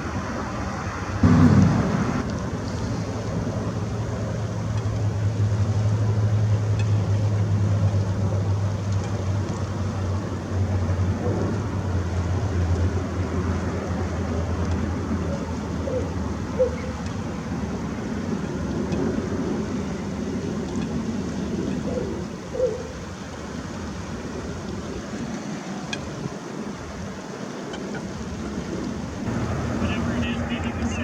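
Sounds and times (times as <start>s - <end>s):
distant traffic rumble: 0.0s - 22.4s, 29.1s - 31.0s
burst dropping in pitch: 29.3s - 31.0s.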